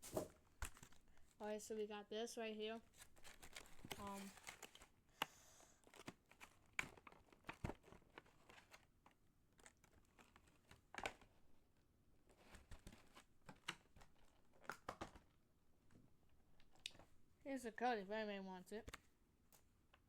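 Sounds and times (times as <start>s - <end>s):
paper and card packaging rustling: 0.0s - 1.4s, 2.8s - 11.4s, 12.2s - 15.3s.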